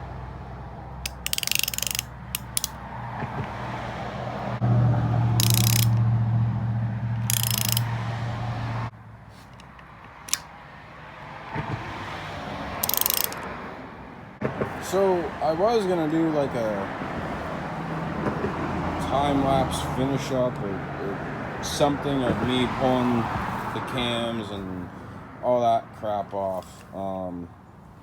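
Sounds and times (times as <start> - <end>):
hand ratchet clicking: 1.0 - 2.8, 5.4 - 6.0, 7.2 - 7.9, 9.5 - 10.5, 12.8 - 13.5.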